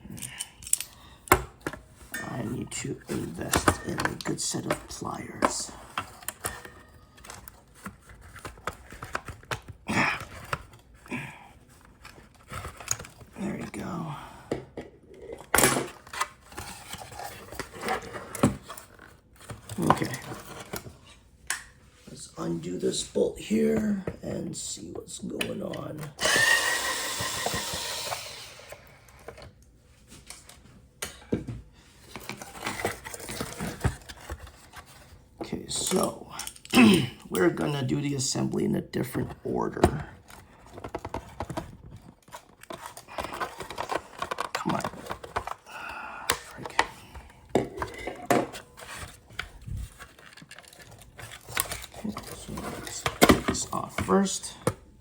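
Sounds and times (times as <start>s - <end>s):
tools and plastic parts clicking: 0.0s - 1.8s, 11.8s - 13.3s, 35.8s - 36.8s, 39.8s - 45.6s, 46.3s - 54.8s
power drill whining: 26.2s - 28.9s.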